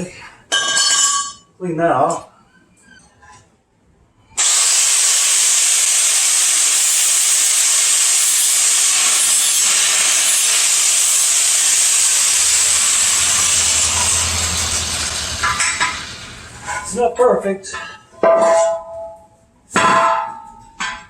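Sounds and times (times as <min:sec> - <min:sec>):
angle grinder grinding steel pipe: 0:04.4 - 0:16.9.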